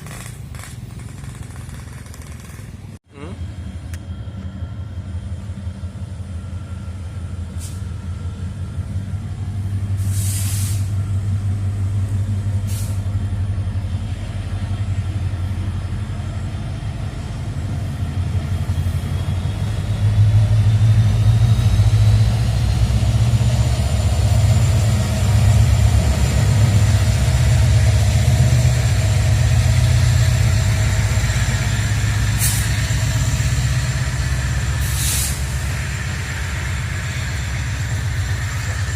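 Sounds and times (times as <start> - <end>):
diesel locomotive engine drone: 0.0 - 38.9
air hissing: 10.0 - 10.9, 34.8 - 35.6.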